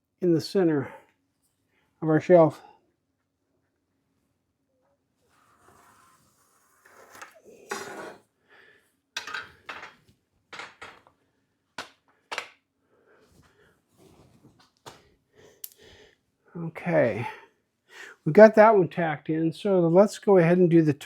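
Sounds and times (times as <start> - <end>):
boards and tools knocking together: 9.2 - 11.1.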